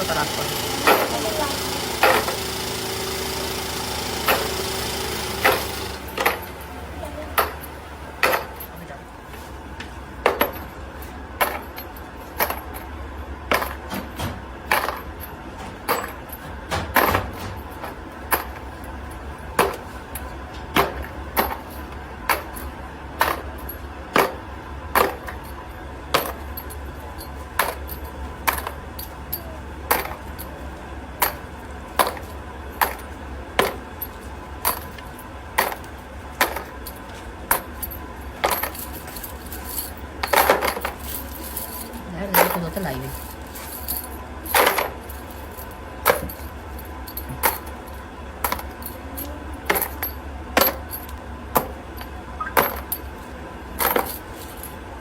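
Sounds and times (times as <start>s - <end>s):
machinery humming: 0.0s - 55.0s
metal parts clinking: 31.2s - 53.2s, 53.8s - 54.8s.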